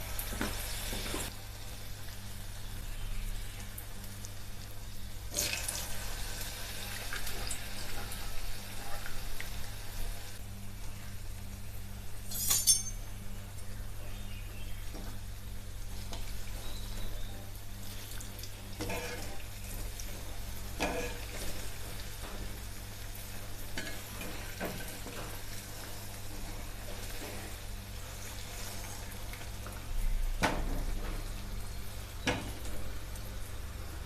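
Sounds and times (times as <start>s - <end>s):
batter sizzling in hot oil: 0.0s - 10.4s, 14.8s - 34.0s
utensil clinking against pan: 12.3s - 13.0s.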